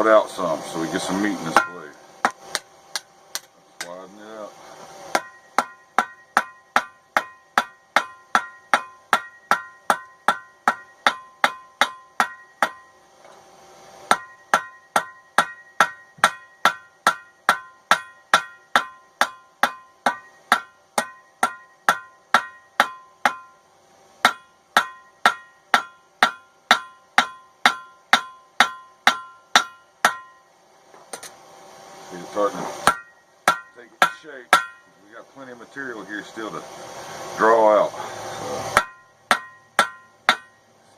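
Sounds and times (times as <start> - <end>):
hammer ringing on anvil: 1.5 - 1.9, 5.1 - 12.9, 14.1 - 23.6, 24.2 - 30.5, 32.8 - 34.9, 38.8 - 40.6.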